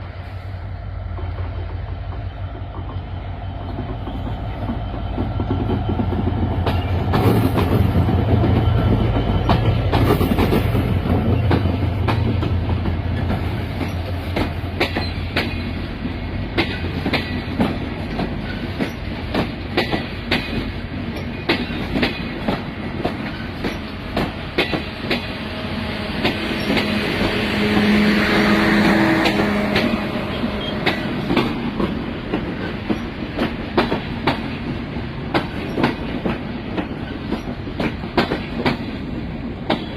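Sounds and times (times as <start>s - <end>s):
train rumbling on rails: 0.0s - 39.9s
wheels clacking over rail joints: 1.1s - 25.4s, 28.8s - 39.0s.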